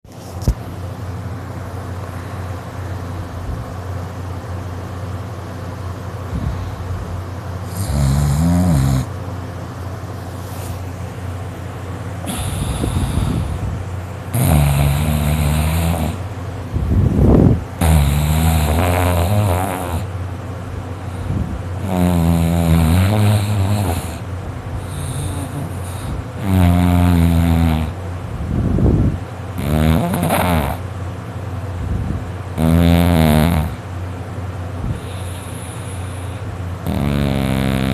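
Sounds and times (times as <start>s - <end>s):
boy snoring loudly: 7.7s - 9.1s, 12.3s - 13.6s, 14.3s - 16.2s, 17.8s - 20.1s, 21.8s - 24.2s, 24.8s - 28.0s, 29.6s - 30.8s, 32.6s - 33.8s, 36.8s - 37.9s
breathy exhale: 12.2s - 13.7s, 24.8s - 26.3s, 34.8s - 36.5s.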